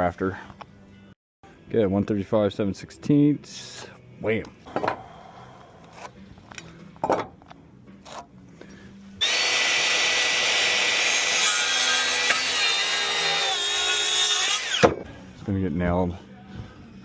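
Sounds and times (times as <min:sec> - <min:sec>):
power saw cutting wood: 0:09.2 - 0:15.0.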